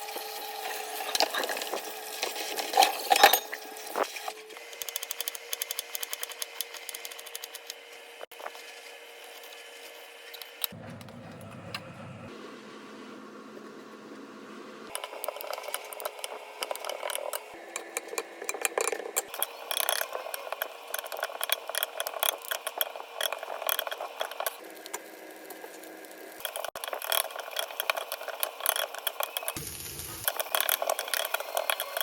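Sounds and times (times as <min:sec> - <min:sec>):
stir-frying crackle in a pan: 0:19.3 - 0:32.0
utensil stirring in a pan: 0:26.4 - 0:32.0.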